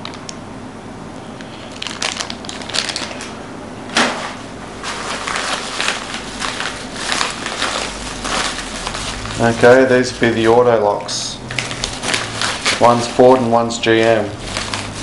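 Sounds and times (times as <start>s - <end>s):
packaging crinkling and rustling: 1.6s - 15.0s.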